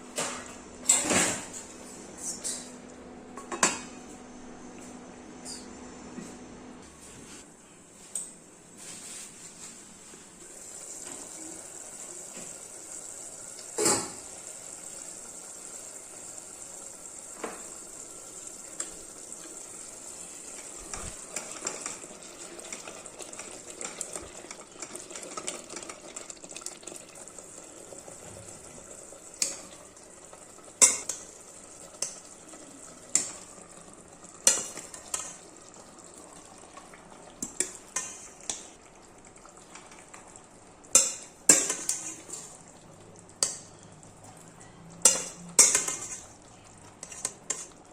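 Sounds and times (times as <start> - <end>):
food sizzling while frying: 8.8 - 44.4, 45.0 - 47.9
utensil scraping against pot: 47.0 - 47.8.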